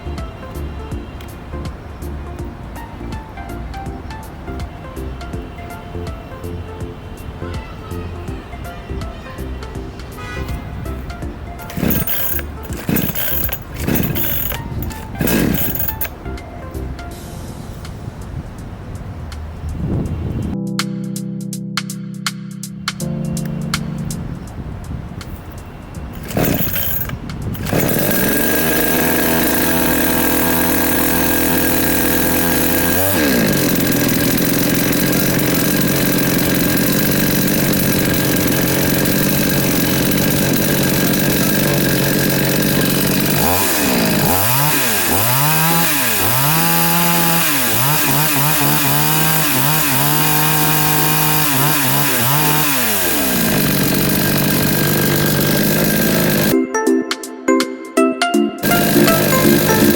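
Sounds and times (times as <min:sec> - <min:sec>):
two-stroke chainsaw engine revving: 0:11.6 - 0:16.2, 0:26.2 - 0:56.6, 0:58.6 - 0:59.9.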